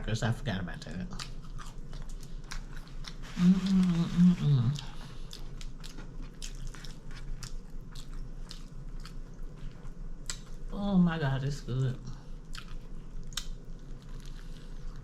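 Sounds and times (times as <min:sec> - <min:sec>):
crunchy chewing: 0:01.1 - 0:10.7, 0:12.3 - 0:15.0
person humming mmm: 0:03.2 - 0:05.0.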